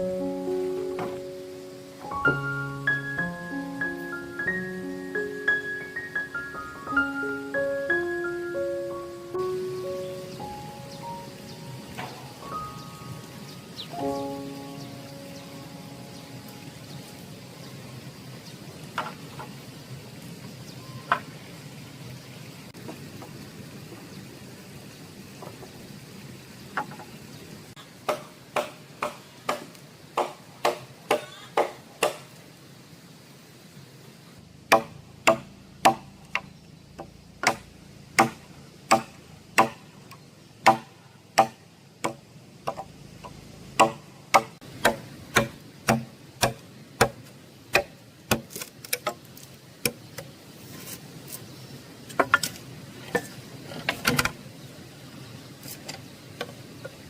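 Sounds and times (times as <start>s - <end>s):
hand tool striking wood: 28.1s - 32.3s, 34.7s - 39.9s, 40.6s - 49.2s.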